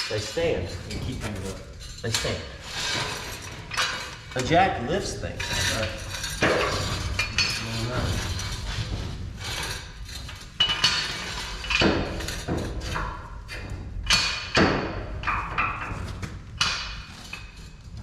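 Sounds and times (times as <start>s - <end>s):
metal jack stands clanking: 5.4s - 8.7s.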